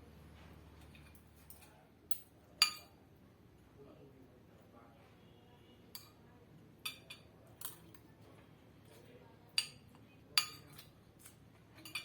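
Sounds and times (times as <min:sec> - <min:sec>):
kitchenware clinking: 0:00.8 - 0:03.0, 0:06.8 - 0:08.0, 0:09.6 - 0:12.0.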